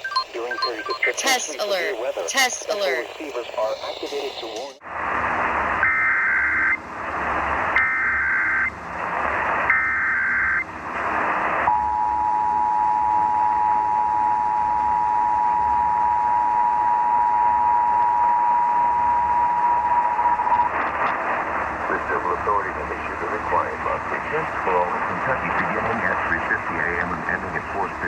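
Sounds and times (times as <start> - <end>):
two-tone attention signal: 0.0 - 3.0
data bursts over radio: 0.0 - 4.8
radio hiss: 0.0 - 4.8, 20.7 - 28.0.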